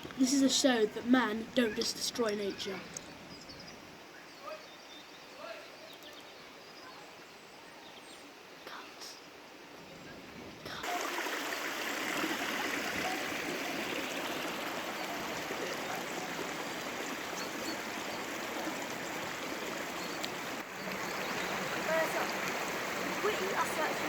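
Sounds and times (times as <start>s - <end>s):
stream water rushing: 10.8s - 24.0s.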